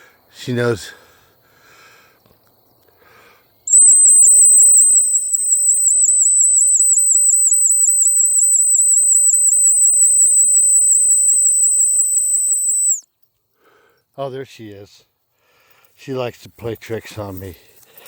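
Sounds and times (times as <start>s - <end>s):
high-pitched whistle blast: 3.7s - 13.0s.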